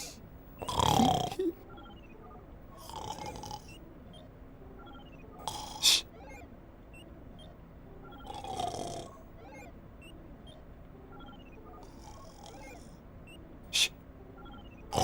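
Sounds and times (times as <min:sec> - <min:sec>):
breathy snores: 0:00.0 - 0:01.4, 0:02.8 - 0:03.8, 0:05.4 - 0:06.1.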